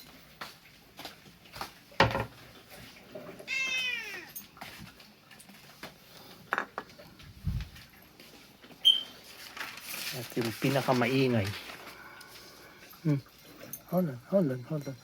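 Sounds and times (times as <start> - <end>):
cat meowing: 3.4 - 4.4.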